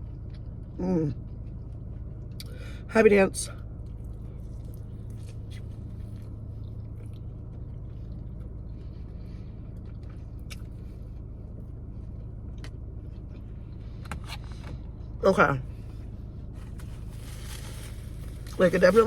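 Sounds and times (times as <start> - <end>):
chewing clicks and smacks: 0.0 - 2.6, 3.6 - 14.8
low car hum: 0.0 - 19.0.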